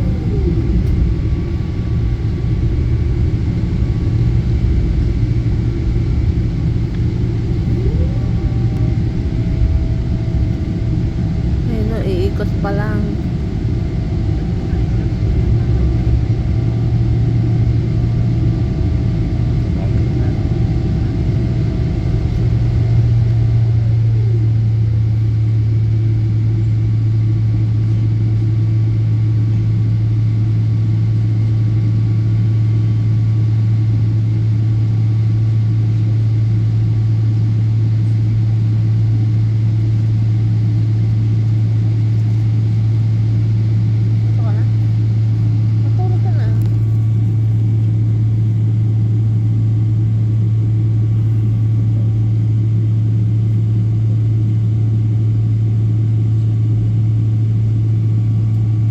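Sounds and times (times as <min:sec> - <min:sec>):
jet airliner cabin drone: 0:00.0 - 0:58.9
gliding higher tone: 0:06.5 - 0:14.7.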